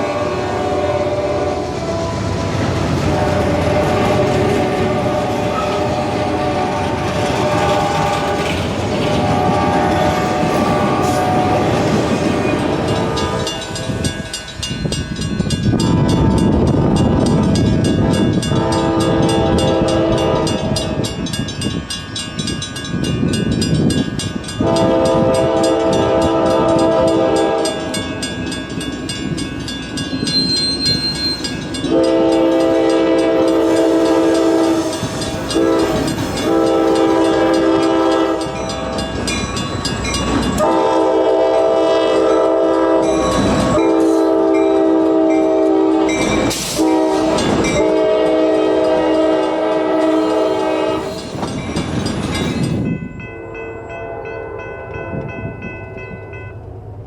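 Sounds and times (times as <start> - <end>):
locomotive air horn blasts: 0.0 - 11.9, 12.8 - 14.1, 15.8 - 21.1, 24.6 - 28.0, 31.9 - 39.1, 40.6 - 51.2
train rumble and wheel clatter: 0.0 - 57.0.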